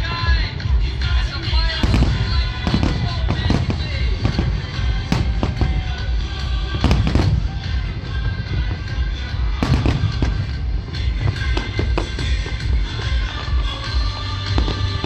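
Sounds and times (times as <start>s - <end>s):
fireworks bangs and booms: 0.0s - 15.0s
low rumble: 0.0s - 15.0s
music playing: 0.0s - 15.0s.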